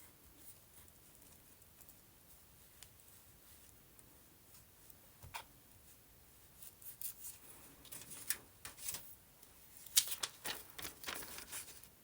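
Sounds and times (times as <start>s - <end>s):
paper and metal stencil rustling: 6.6s - 9.2s, 9.8s - 12.0s.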